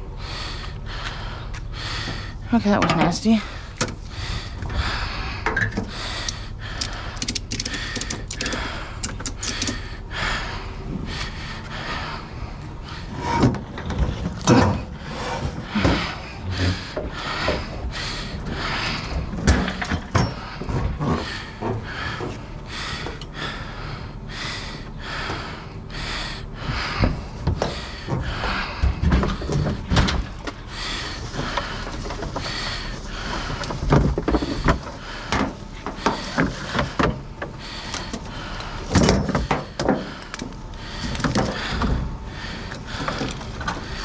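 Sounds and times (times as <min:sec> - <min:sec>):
hard objects clunking and rattling: 0:06.8 - 0:09.8.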